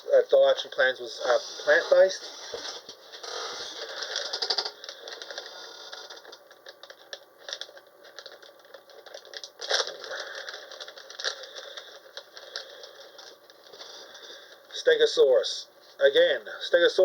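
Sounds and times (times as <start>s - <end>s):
packaging crackle: 2.8s - 14.6s
pack clicks and crinkles: 3.2s - 14.6s.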